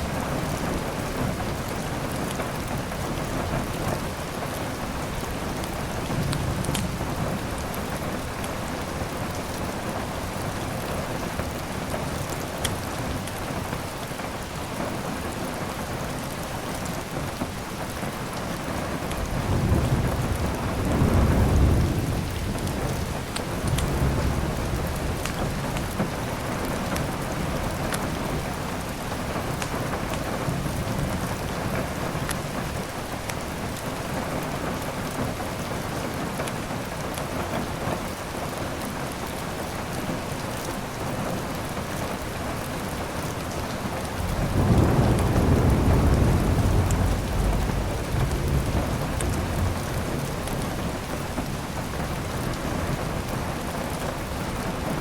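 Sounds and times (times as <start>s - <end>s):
steady rain: 0.0s - 55.0s
low thunder rumble: 19.1s - 26.8s, 43.9s - 53.4s.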